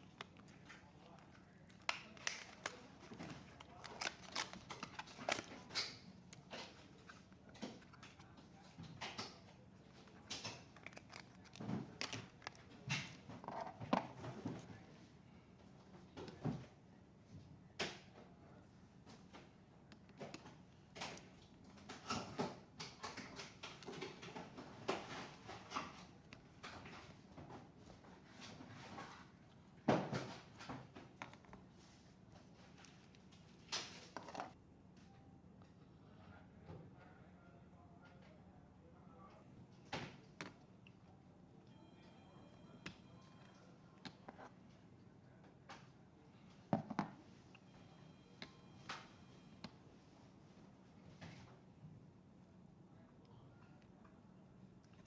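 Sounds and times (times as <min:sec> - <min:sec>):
laptop parts clicking and scraping: 0:00.0 - 0:08.3, 0:10.6 - 0:13.7.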